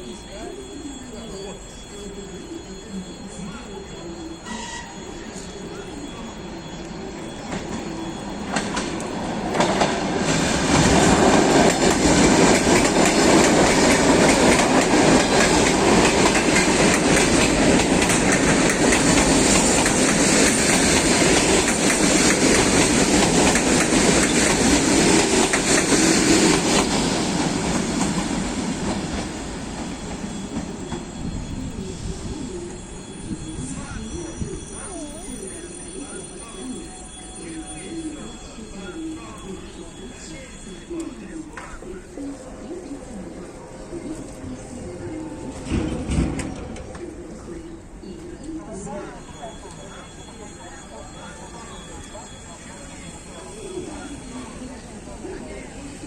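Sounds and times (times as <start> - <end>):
electric train passing: 0.0 - 56.0.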